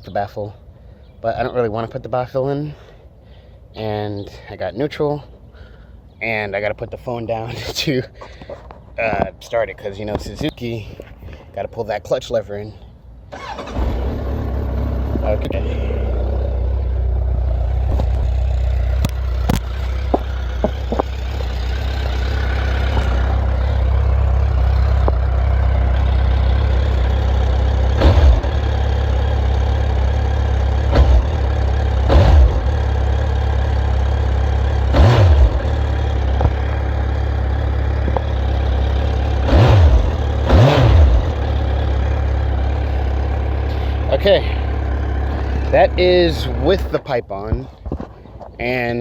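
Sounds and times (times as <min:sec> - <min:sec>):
motorcycle engine idling: 0:13.4 - 0:46.9.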